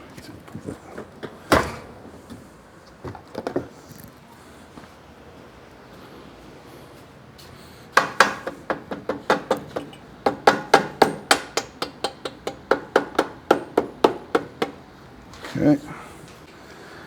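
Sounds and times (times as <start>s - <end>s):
mallet knocking on metal shaft: 8.0s - 14.9s.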